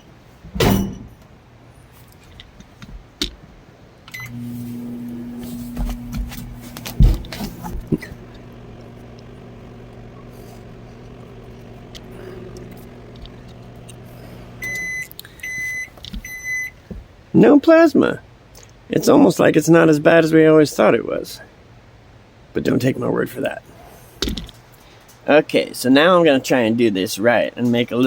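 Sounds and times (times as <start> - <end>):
clicks: 4.1 - 16.4
microwave oven humming: 4.1 - 16.9
short beeps: 4.2 - 4.4, 14.6 - 16.7.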